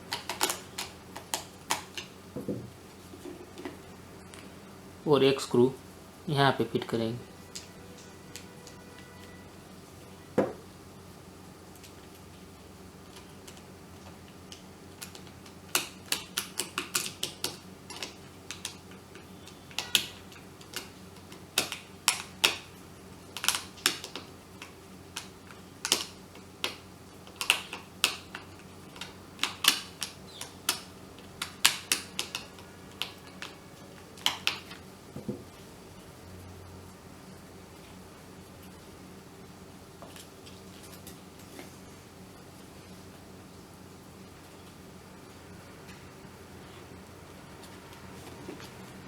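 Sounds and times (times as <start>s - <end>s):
faint steady hum: 0.0s - 49.0s.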